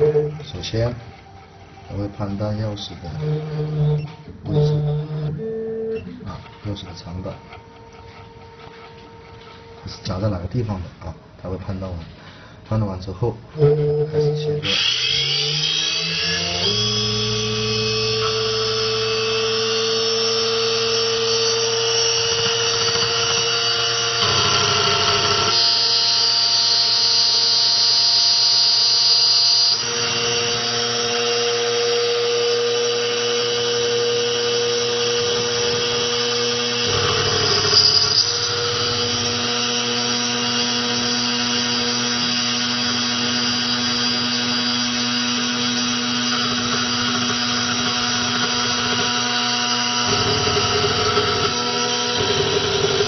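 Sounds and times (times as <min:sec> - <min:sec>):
key cutting machine whining: 0:00.0 - 0:10.8, 0:13.6 - 0:53.0
cutter grinding key blade: 0:33.4 - 0:40.6.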